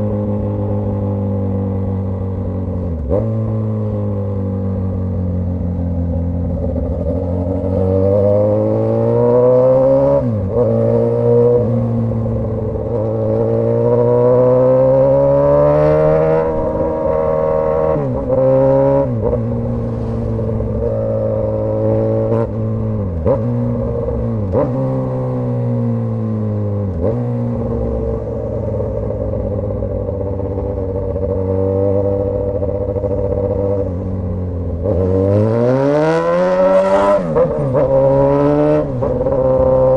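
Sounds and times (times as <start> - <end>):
loud motorcycle engine revving: 2.9 - 4.9, 6.4 - 39.9.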